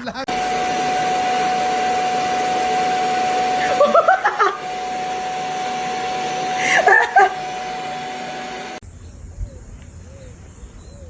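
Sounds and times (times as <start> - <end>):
small electric motor whirring: 0.3 - 8.8.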